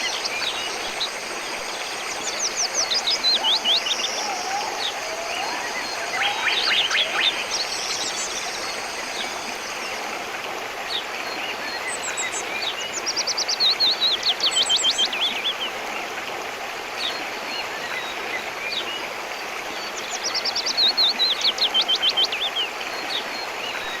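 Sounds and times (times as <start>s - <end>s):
songbird singing: 0.0s - 15.7s
river rushing: 0.0s - 19.8s.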